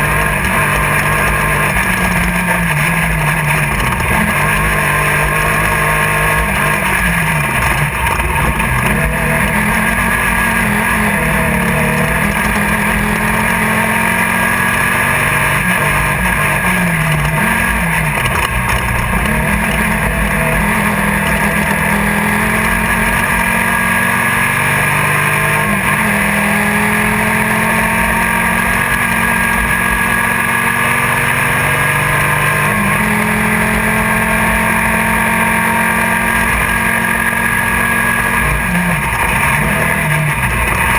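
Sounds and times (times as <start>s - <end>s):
driving noise: 0.0s - 40.9s
race car engine running hard: 0.0s - 40.9s.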